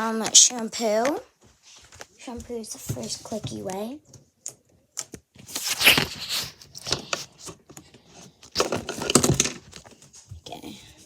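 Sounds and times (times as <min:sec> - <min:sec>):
scraping rustles: 0:05.4 - 0:11.0.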